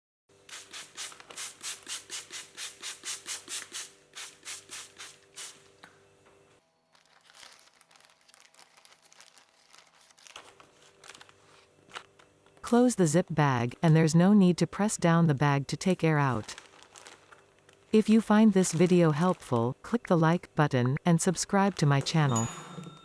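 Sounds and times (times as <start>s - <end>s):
spray bottle spritzing: 0.5s - 5.7s
paper towel and plastic bag rustling: 6.9s - 13.0s, 15.8s - 20.0s.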